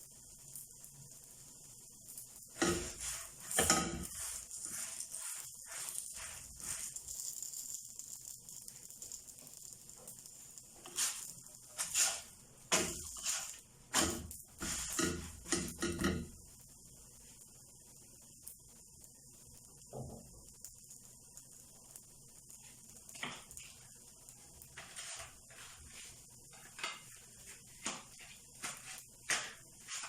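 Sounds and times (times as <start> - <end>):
faint steady hiss: 0.0 - 30.0
flatbread slapping in a pan: 0.2 - 16.4, 22.4 - 23.9, 24.6 - 30.0.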